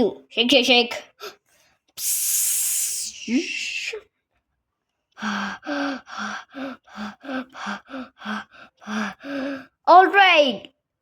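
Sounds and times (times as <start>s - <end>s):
man making breathy pitched sounds: 2.0s - 4.0s.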